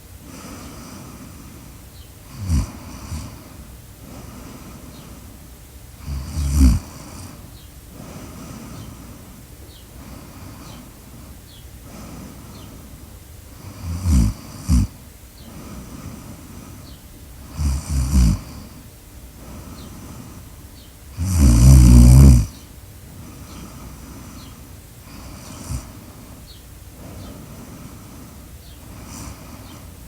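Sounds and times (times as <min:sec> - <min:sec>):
person snoring: 0:02.3 - 0:04.9, 0:06.0 - 0:07.4, 0:13.6 - 0:15.0, 0:17.4 - 0:18.8, 0:21.1 - 0:22.6, 0:25.1 - 0:26.0, 0:27.4 - 0:29.7.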